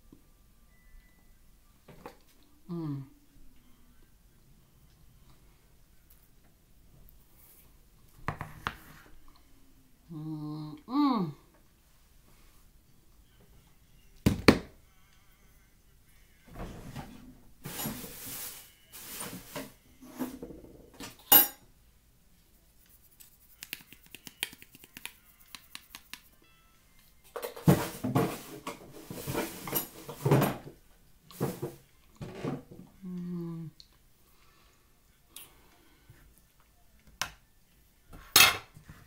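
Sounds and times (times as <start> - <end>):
person humming: 2.4 - 4.1, 9.4 - 11.5, 32.9 - 33.8.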